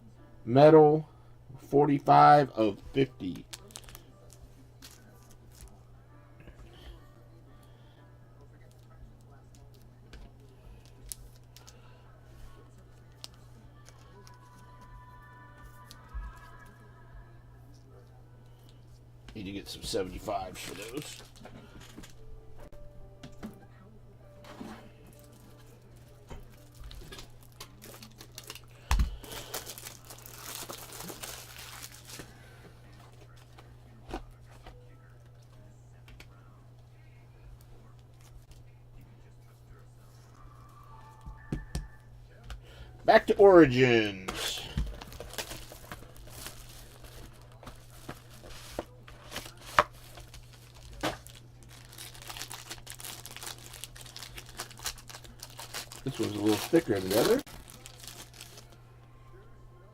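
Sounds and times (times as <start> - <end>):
wrapper crinkling and tearing: 3.2 - 5.8, 13.1 - 14.8, 20.2 - 22.2, 25.1 - 32.4, 43.8 - 58.8
cards being handled: 19.9 - 22.2, 43.3 - 58.8.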